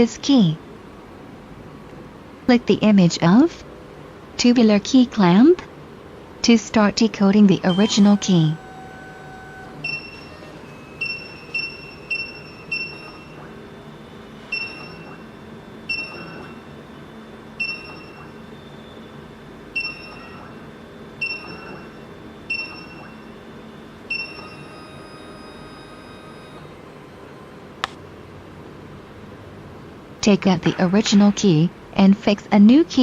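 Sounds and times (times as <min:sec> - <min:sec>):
machine humming: 0:00.0 - 0:33.0
short electronic beep: 0:07.7 - 0:13.4, 0:14.5 - 0:15.2, 0:15.9 - 0:16.6, 0:21.2 - 0:23.4, 0:24.1 - 0:26.6.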